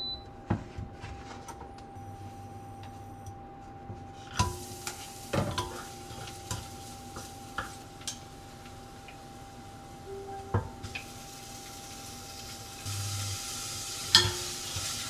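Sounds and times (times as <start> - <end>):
food sizzling in a pan: 4.4 - 15.0.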